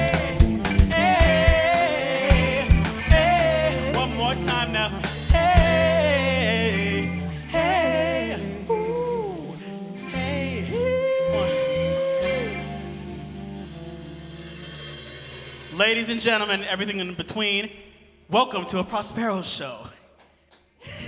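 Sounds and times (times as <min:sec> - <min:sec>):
person singing: 0:00.0 - 0:13.2
live band playing: 0:00.0 - 0:16.4.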